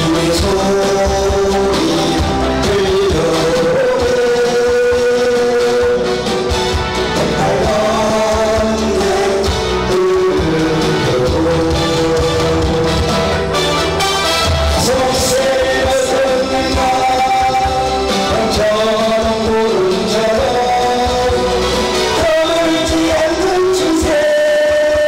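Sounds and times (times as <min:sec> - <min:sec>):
band with bass and drums: 0:00.0 - 0:25.0
person singing long notes: 0:07.1 - 0:13.5, 0:14.7 - 0:25.0.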